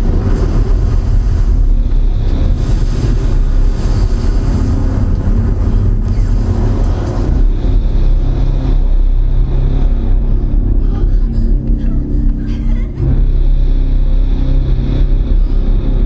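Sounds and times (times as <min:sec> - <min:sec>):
noisy crashing: 0:00.0 - 0:10.8
heavy low rumble: 0:00.0 - 0:16.0.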